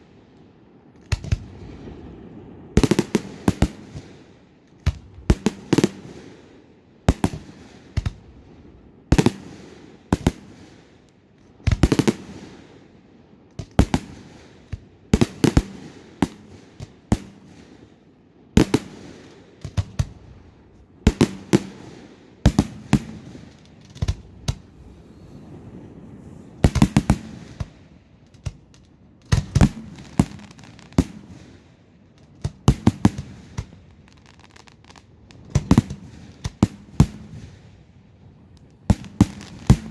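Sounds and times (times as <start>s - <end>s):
low rolling echo: 0.7s - 5.2s, 20.1s - 31.4s
fireworks bursting with bangs: 1.0s - 12.9s, 13.6s - 18.0s, 18.6s - 39.9s.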